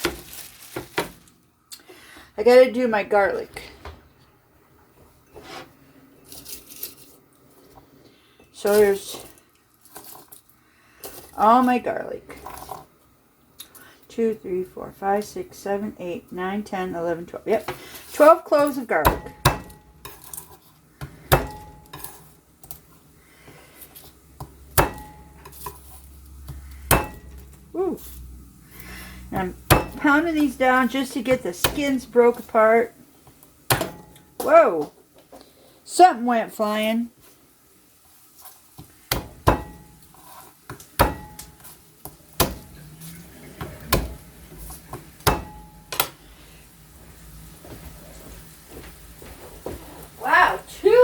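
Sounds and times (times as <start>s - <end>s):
garlic being pounded: 19.0s - 20.1s, 21.0s - 22.1s, 24.4s - 25.4s, 26.4s - 27.9s, 29.4s - 30.1s, 33.7s - 34.2s, 39.1s - 40.0s, 40.7s - 42.8s, 43.6s - 44.3s, 44.9s - 45.7s.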